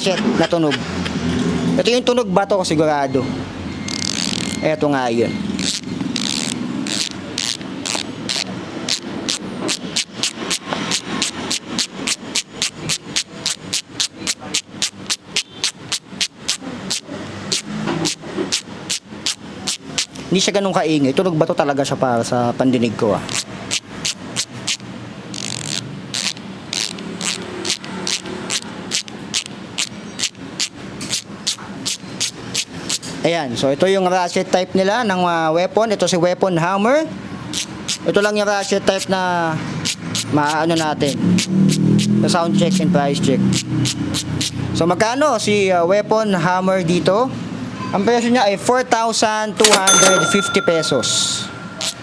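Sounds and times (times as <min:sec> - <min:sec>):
bicycle hub ratchet clicking: 0:03.9 - 0:04.6, 0:05.6 - 0:20.2, 0:23.3 - 0:33.0, 0:37.5 - 0:39.1, 0:39.8 - 0:41.8, 0:43.5 - 0:44.6.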